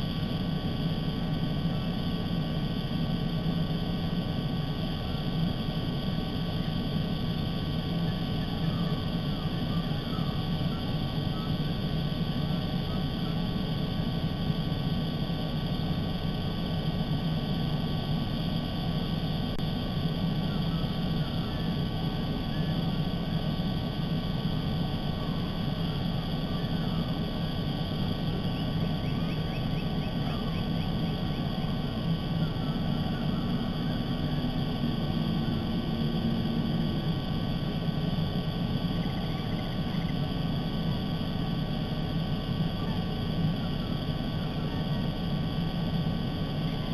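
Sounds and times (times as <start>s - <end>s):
low drone: 0.0s - 46.9s
low outdoor rumble: 0.0s - 46.9s
faint bird chirps: 8.0s - 11.7s, 20.2s - 23.0s, 28.2s - 34.4s, 38.9s - 40.3s.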